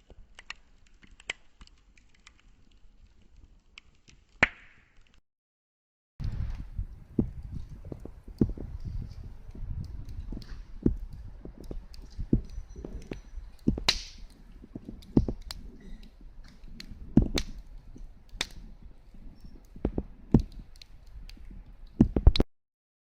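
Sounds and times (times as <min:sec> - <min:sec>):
campfire crackling and popping: 0:00.0 - 0:05.2, 0:06.2 - 0:22.5
low rumble of wind: 0:06.2 - 0:22.4.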